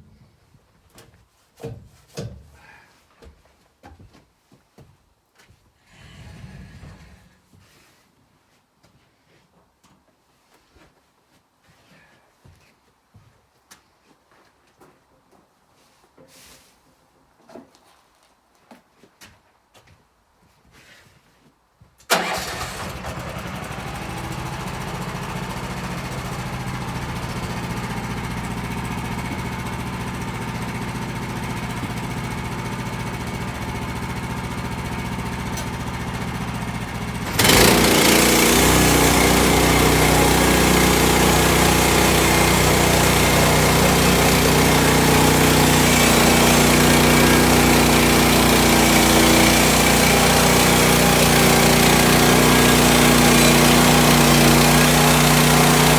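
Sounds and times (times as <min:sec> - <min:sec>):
sawmill petrol engine running: 0:22.1 - 0:55.9.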